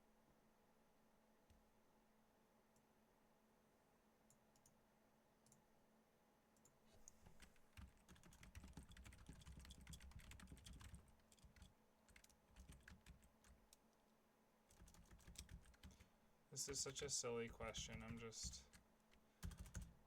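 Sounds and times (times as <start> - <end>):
typing on computer keyboard: 7.0 - 13.8, 14.7 - 16.1, 17.6 - 20.0.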